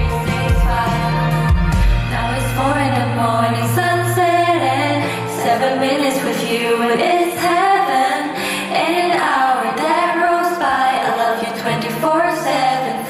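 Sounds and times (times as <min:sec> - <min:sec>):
backing track with bass: 0:00.0 - 0:05.0
woman singing pop melody: 0:00.0 - 0:13.0.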